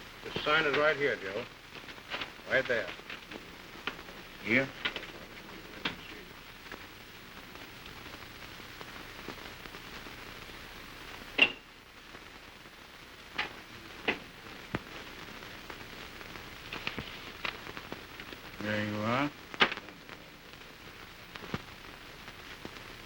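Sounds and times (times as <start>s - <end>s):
film soundtrack hiss and crackle: 0.0s - 23.0s.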